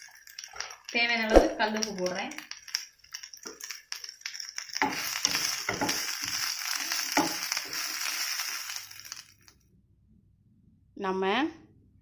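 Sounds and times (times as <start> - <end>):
food sizzling in a pan: 0.0 - 9.6.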